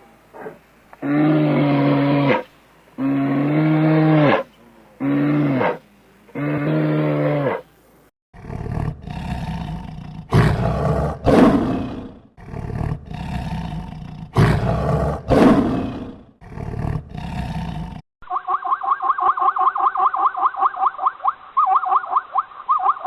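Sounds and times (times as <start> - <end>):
big cat roaring: 0.4 - 2.4, 3.0 - 7.6, 8.4 - 18.0.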